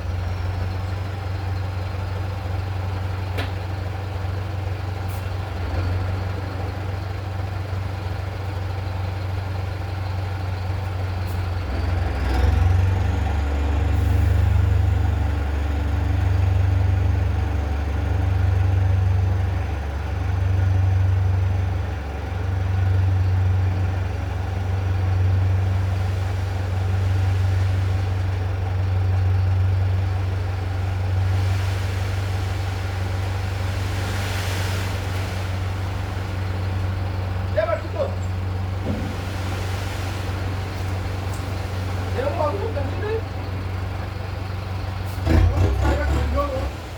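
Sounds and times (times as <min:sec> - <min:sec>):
diesel truck engine revving: 0:03.9 - 0:46.9.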